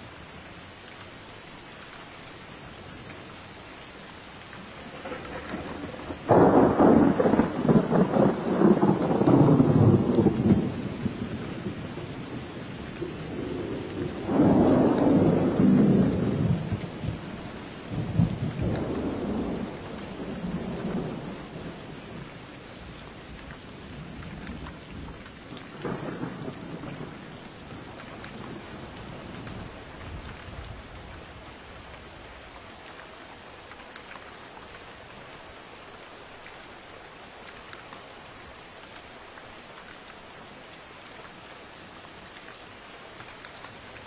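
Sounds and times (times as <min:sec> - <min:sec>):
rain hissing: 0:00.0 - 0:44.0
thunder rolling: 0:04.8 - 0:10.8, 0:13.4 - 0:17.2.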